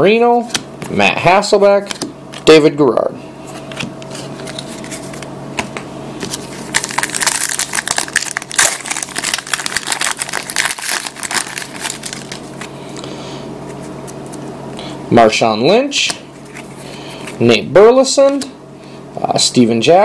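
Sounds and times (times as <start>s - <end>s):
foil wrapper tearing and crinkling: 6.3s - 12.7s.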